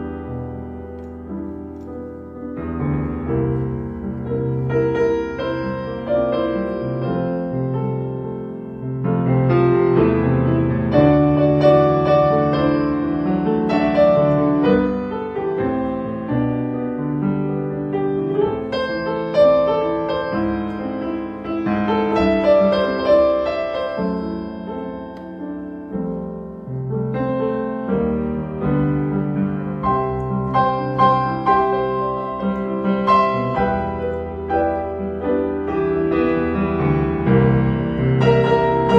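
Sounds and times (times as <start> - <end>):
slow piano chords: 0.0 - 38.9.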